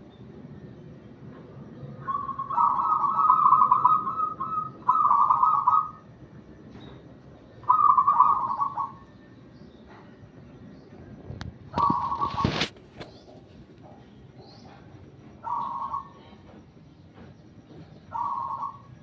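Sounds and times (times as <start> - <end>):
dove cooing: 2.0 - 6.1, 7.6 - 9.1, 11.7 - 12.8, 14.6 - 16.6, 18.0 - 19.0.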